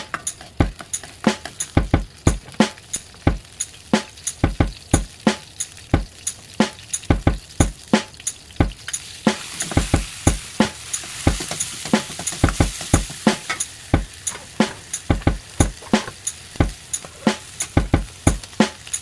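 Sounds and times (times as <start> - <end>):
food sizzling in hot oil: 0.0 - 19.0
metal spatula scraping a pan: 9.4 - 17.8.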